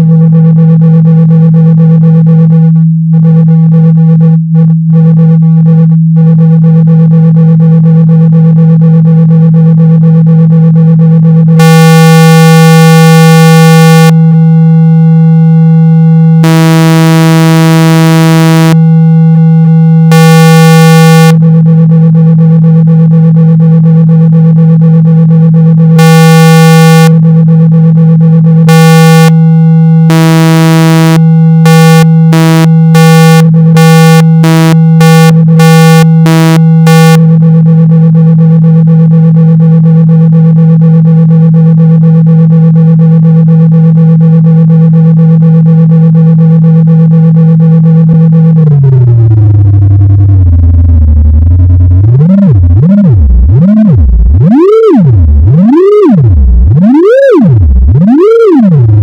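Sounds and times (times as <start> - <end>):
loud steady low hum: 8.8 - 38.2, 47.5 - 59.0
bright buzzing tones: 11.6 - 21.4, 26.0 - 27.2, 28.7 - 37.2, 48.7 - 59.0.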